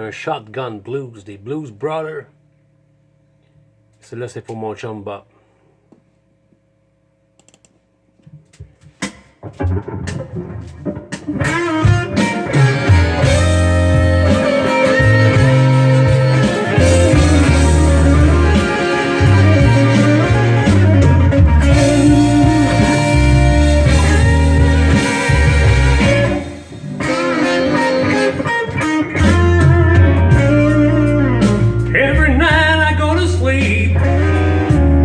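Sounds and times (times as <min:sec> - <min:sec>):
electric guitar blues: 0:09.4 - 0:35.0
bass line: 0:09.6 - 0:35.0.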